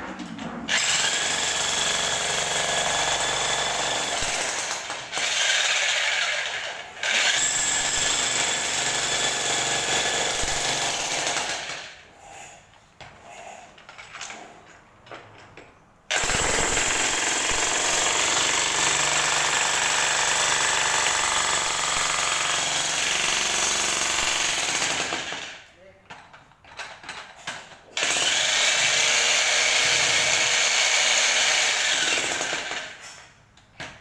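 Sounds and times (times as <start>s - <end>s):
jackhammer hammering: 0.7s - 11.9s, 16.1s - 25.6s, 28.0s - 33.0s.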